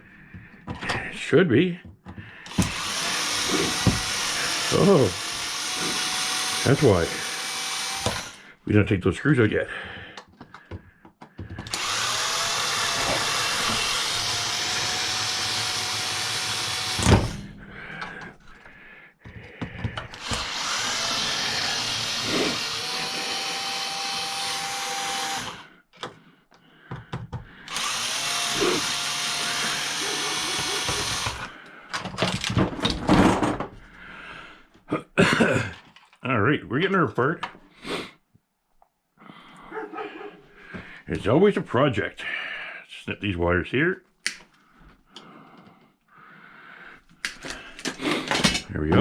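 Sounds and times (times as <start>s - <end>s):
power drill whining: 2.4s - 8.5s, 11.4s - 18.7s, 19.9s - 26.1s, 26.9s - 32.5s.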